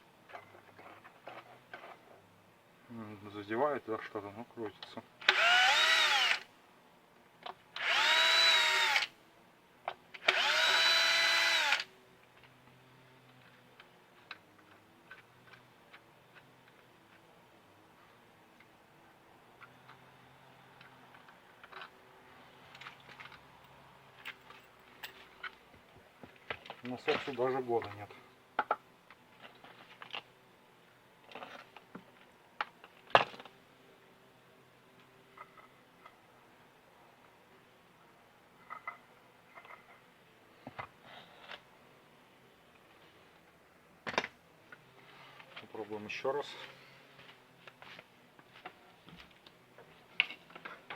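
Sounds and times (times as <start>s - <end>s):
cordless drill whining: 5.2s - 6.5s, 7.8s - 9.1s, 10.2s - 11.9s
clicks and knocks of pump parts: 31.3s - 33.6s.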